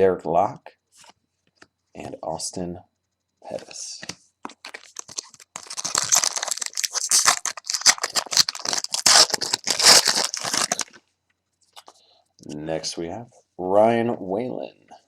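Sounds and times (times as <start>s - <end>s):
foil wrapper tearing and crinkling: 4.6s - 11.0s.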